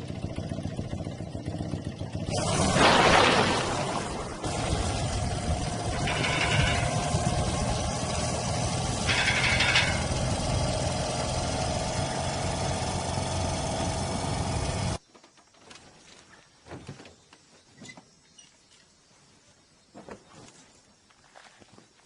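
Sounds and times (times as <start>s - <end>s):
motorcycle engine running: 0.0s - 3.0s, 3.8s - 15.0s
high-pitched engine rasps: 0.0s - 15.0s.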